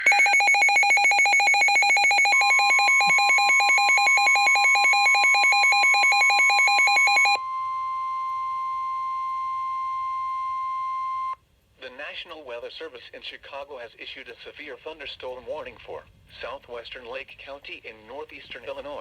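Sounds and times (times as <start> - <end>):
rapidly pulsing electronic alarm tone: 0.0 - 7.4
steady alarm tone: 0.0 - 11.4.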